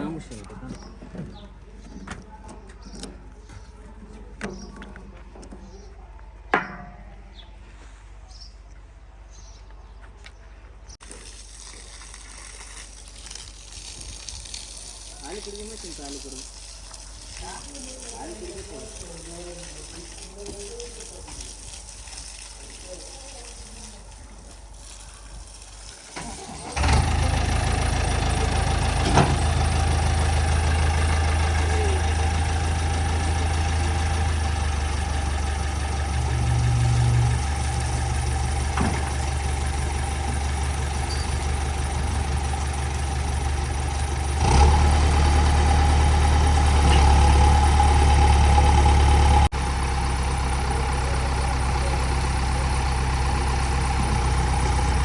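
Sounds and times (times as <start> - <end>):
diesel engine idling: 26.2 - 55.0.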